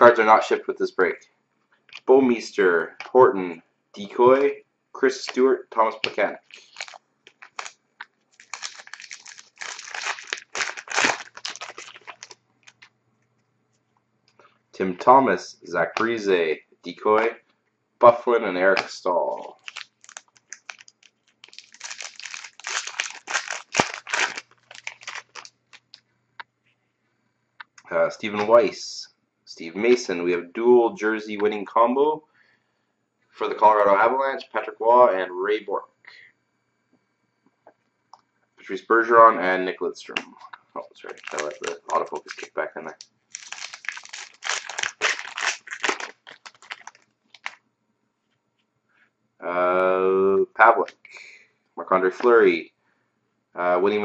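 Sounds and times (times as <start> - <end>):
trading cards rustling and shuffling: 6.0 - 12.9, 18.7 - 26.0, 41.0 - 47.6
foil wrapper crinkling and tearing: 6.4 - 12.9, 19.3 - 26.0, 41.0 - 47.6.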